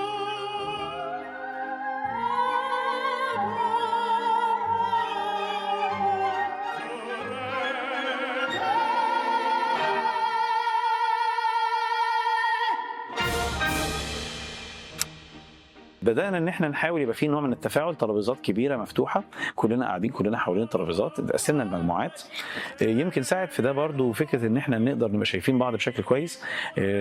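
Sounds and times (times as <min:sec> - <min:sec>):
classical accompaniment: 0:00.0 - 0:10.8, 0:13.1 - 0:19.5
operatic singing: 0:00.0 - 0:27.0.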